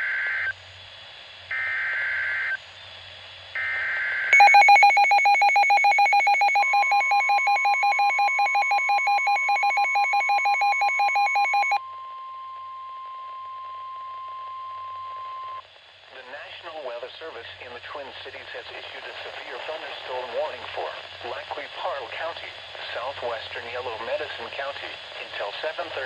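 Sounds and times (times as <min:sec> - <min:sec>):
rapid alarm beeping: 0:04.4 - 0:11.8
steady warning alarm tone: 0:04.4 - 0:11.8.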